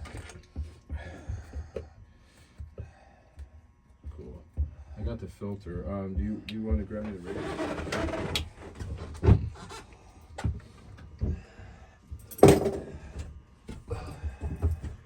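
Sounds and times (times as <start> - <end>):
clunks and knocks of tools: 12.2 - 15.0.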